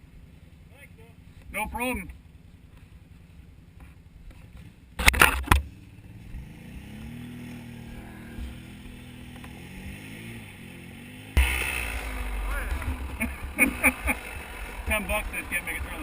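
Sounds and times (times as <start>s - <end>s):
engine running at low revs: 0.0s - 16.0s
loud bursts of noise: 11.4s - 16.0s.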